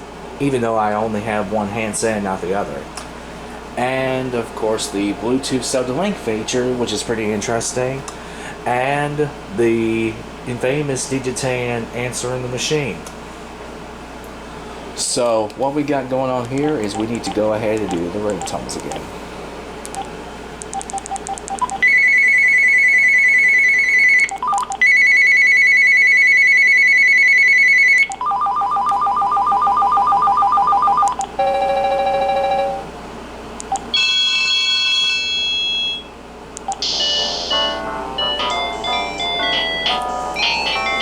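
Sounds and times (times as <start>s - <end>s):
phone ringtones: 20.8s - 32.9s, 36.7s - 41.0s.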